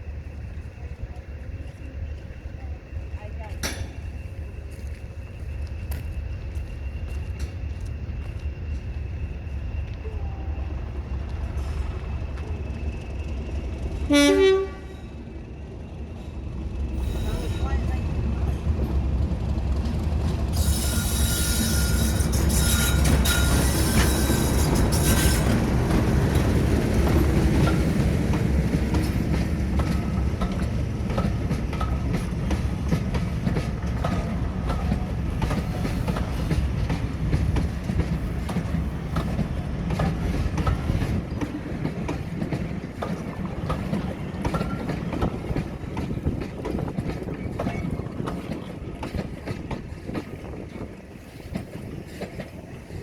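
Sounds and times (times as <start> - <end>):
diesel locomotive engine rumbling: 0.0 - 53.0
train wheels clicking over rail joints: 3.0 - 10.1, 17.1 - 53.0
wheels squealing and hissing: 20.6 - 26.4.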